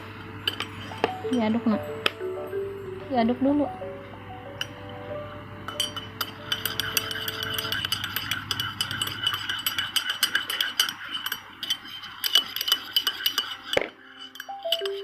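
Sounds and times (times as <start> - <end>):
teaspoon clinking in a cup: 0.4 - 1.5, 5.7 - 15.0.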